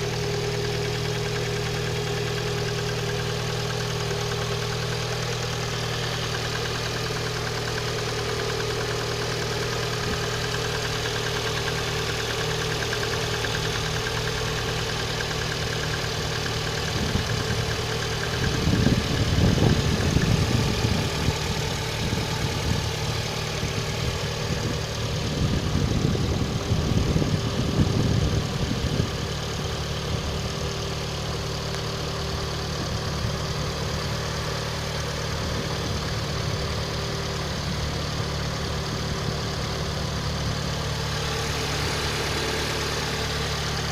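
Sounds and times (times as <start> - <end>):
car engine idling with a knock: 0.1 - 29.0.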